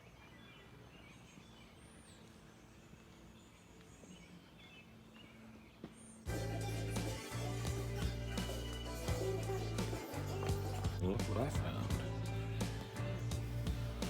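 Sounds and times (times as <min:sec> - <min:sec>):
bird chirps: 0:00.0 - 0:14.0.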